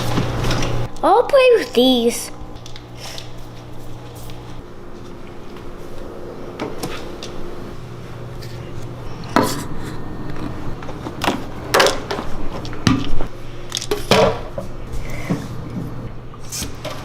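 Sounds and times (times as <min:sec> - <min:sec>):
objects knocking and clattering: 0:10.4 - 0:14.7.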